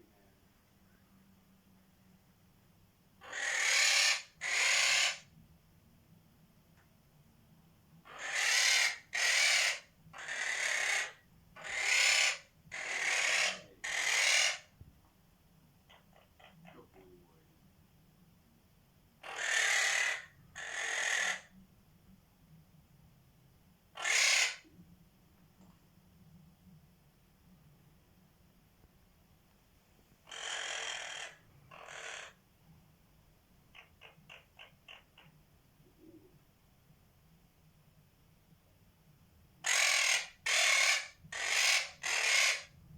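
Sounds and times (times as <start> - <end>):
parrot screeching: 3.2 - 5.2, 8.1 - 14.7, 19.2 - 21.5, 24.0 - 24.6, 30.3 - 32.4, 39.6 - 42.7.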